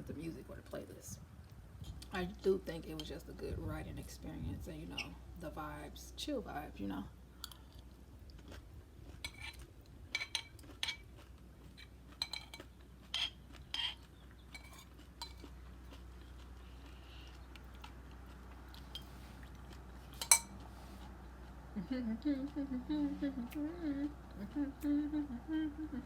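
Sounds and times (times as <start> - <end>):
spoon clinking against bowl: 20.2 - 20.6.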